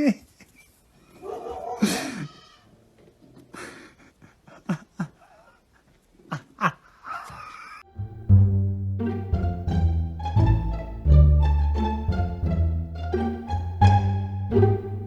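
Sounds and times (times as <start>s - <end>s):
plucked-string music: 7.9s - 15.0s.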